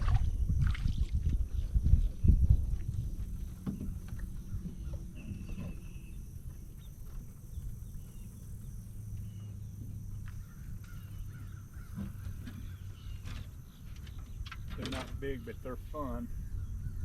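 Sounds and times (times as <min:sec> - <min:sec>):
choppy water: 0:00.0 - 0:06.0
wind rumbling on microphone: 0:00.0 - 0:17.0
bird calls: 0:03.4 - 0:17.0.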